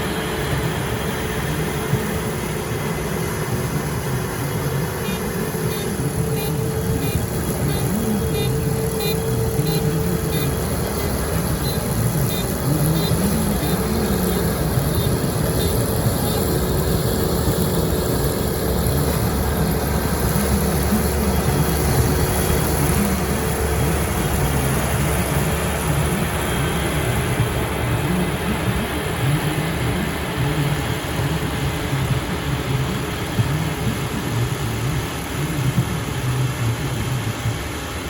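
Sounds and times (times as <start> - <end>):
farm machine engine running: 0.0 - 38.0.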